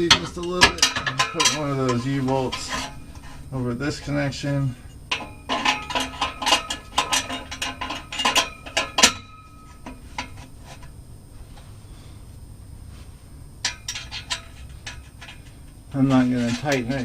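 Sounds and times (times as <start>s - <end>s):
metal clamp clinking: 0.0s - 3.3s, 5.1s - 10.9s, 13.6s - 15.8s.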